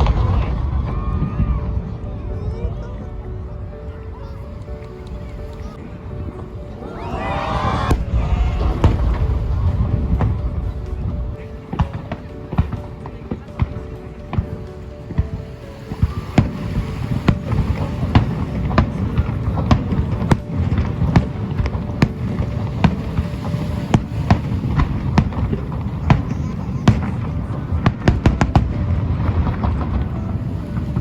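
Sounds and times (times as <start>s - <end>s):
fireworks bangs: 0.0s - 2.0s, 6.3s - 31.0s
low rumble: 6.7s - 11.8s.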